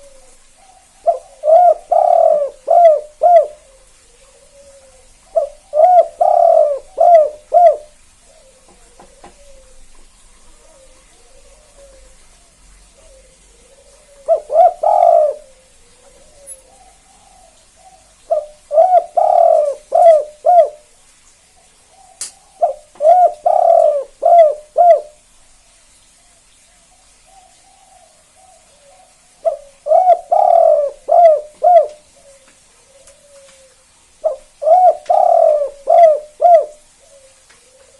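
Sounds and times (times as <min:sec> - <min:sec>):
dove cooing: 0:00.0 - 0:20.9, 0:21.6 - 0:25.2, 0:27.3 - 0:37.9.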